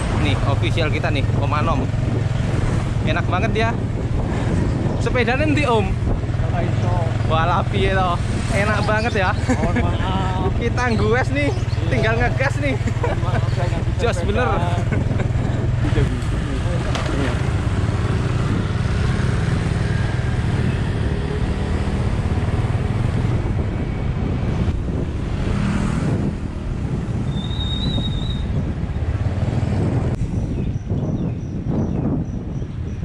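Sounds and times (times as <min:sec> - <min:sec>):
road traffic: 0:00.0 - 0:33.0
wind rumbling on microphone: 0:00.0 - 0:33.0
high whistle: 0:27.3 - 0:28.5.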